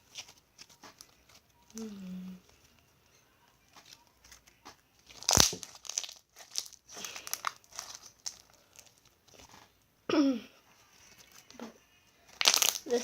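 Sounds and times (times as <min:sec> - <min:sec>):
slime squished by hand: 0:05.0 - 0:09.7, 0:12.3 - 0:13.0
slime crackling clicks and pops: 0:05.1 - 0:08.4, 0:12.3 - 0:13.0.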